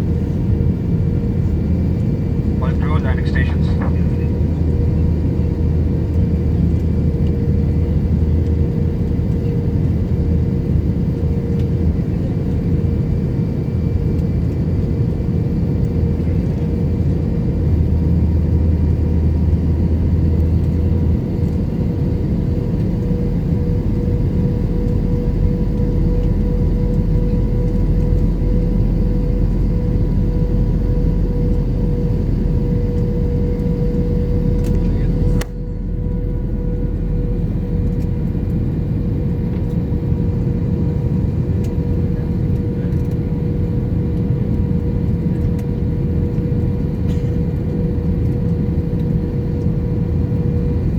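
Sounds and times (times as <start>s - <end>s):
airplane cabin engine and airflow noise: 0.0s - 50.9s
low rumble: 17.8s - 40.5s.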